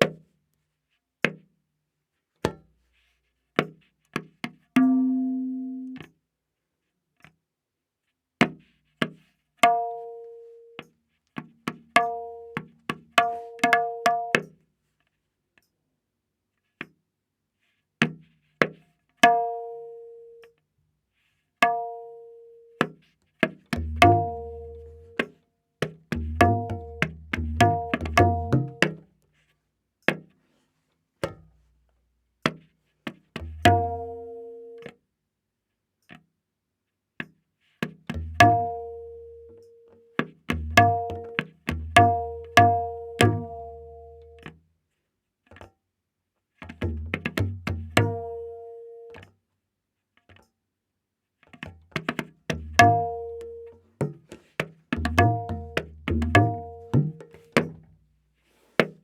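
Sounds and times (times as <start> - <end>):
tabla strokes ringing: 4.8 - 6.1, 22.8 - 29.0, 33.4 - 34.9, 38.1 - 44.6, 46.6 - 49.3, 51.6 - 57.9.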